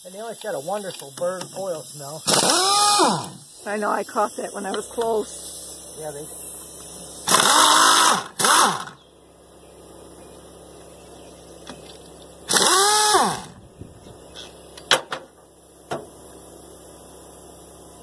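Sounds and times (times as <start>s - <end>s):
power tool motor revving: 2.2s - 3.5s, 7.2s - 9.0s, 12.4s - 13.6s.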